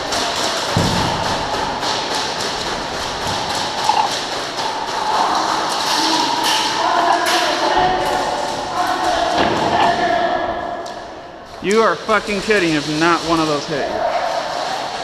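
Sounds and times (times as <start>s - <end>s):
airsoft gunfire: 0.0s - 5.4s
bbs ticking on surfaces: 0.0s - 6.0s.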